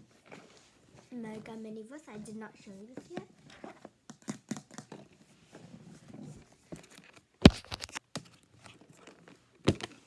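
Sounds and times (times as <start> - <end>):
plastic toy pieces rustling and clicking: 7.5 - 8.0.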